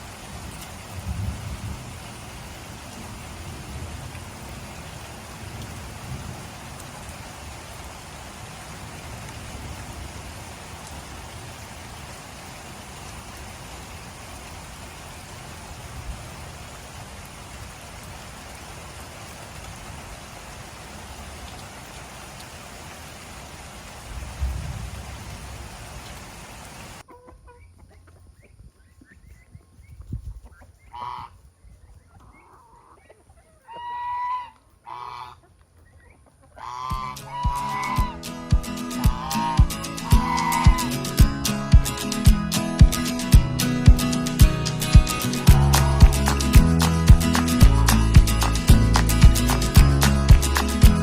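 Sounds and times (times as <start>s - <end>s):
faint clucking of fowl: 27.0s - 29.7s, 30.3s - 38.2s, 39.0s - 41.0s
geese honking: 30.9s - 31.4s, 33.7s - 35.5s, 36.5s - 41.2s, 45.2s - 48.6s
steady hiss: 37.2s - 51.0s.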